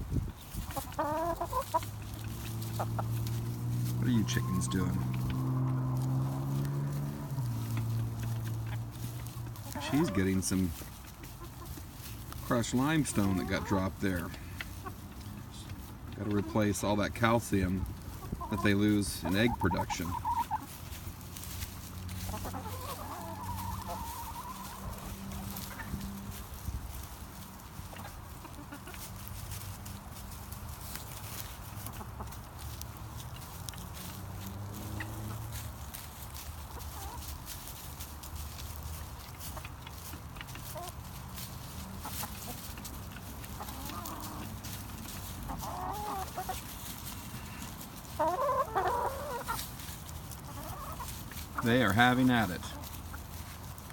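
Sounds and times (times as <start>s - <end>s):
hens clucking: 0.0s - 53.9s.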